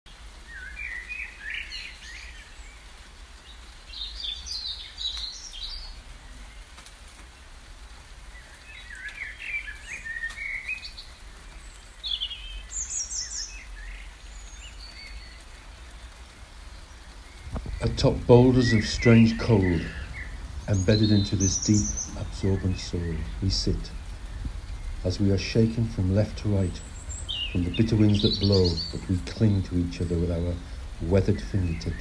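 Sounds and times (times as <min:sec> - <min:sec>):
small birds chirping: 0:00.4 - 0:07.5, 0:08.3 - 0:32.0
steady low rumble: 0:16.4 - 0:32.0.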